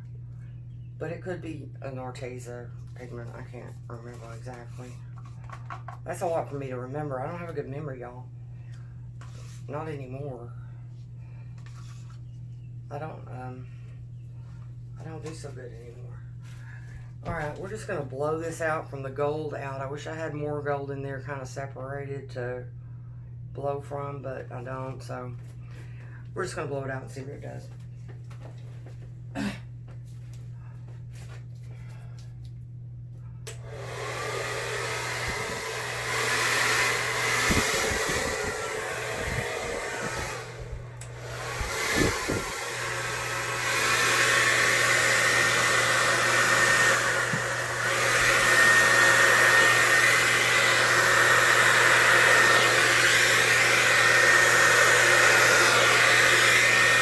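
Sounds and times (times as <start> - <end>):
hair dryer blowing: 33.5 - 57.0.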